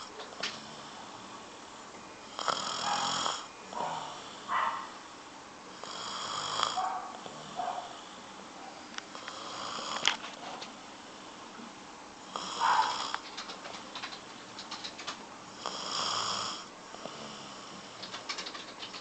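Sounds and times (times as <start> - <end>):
person snoring: 2.3 - 4.5, 5.7 - 8.1, 9.1 - 10.2, 12.2 - 13.2, 15.5 - 18.0
small clicks: 13.1 - 15.2, 18.0 - 19.0.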